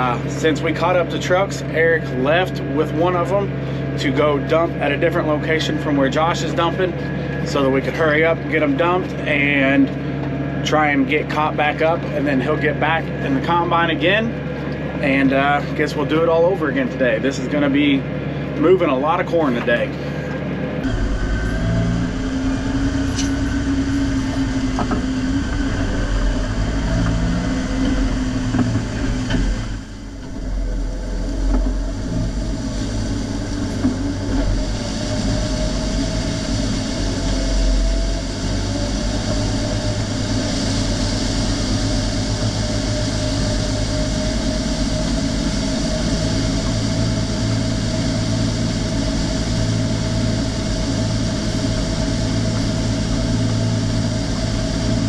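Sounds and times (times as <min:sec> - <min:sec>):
harvest machinery engine running: 0:00.0 - 0:55.0.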